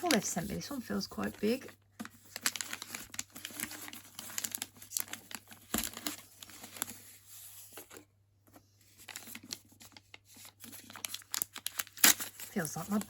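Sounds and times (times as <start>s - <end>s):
paper wrapping tearing and crinkling: 2.0s - 7.1s, 9.0s - 13.0s.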